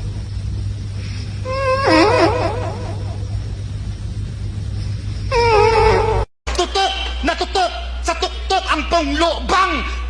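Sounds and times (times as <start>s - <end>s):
low hum: 0.0s - 10.0s
high wavering vocal cry: 1.4s - 3.2s, 5.3s - 6.3s.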